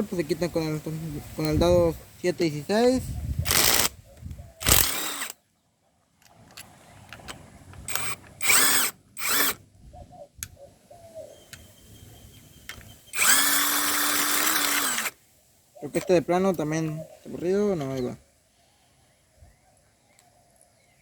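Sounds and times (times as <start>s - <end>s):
power drill spinning: 3.5s - 4.0s, 4.6s - 5.4s, 7.2s - 9.6s, 12.6s - 15.2s.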